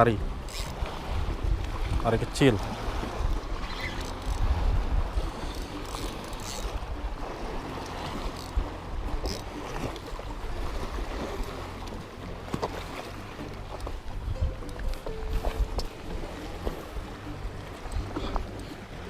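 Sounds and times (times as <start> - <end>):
sea water washing on shore: 0.0 - 19.0
wind buffeting microphone: 0.0 - 19.0.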